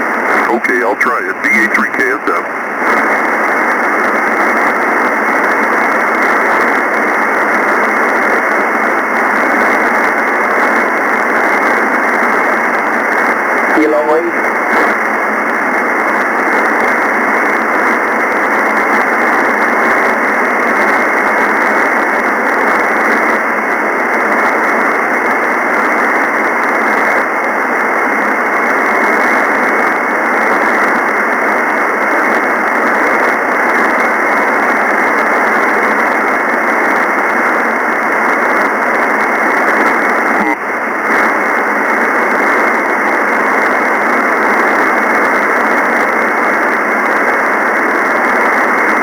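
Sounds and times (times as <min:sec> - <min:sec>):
radio receiver hiss: 0:00.0 - 0:04.1, 0:39.3 - 0:41.4.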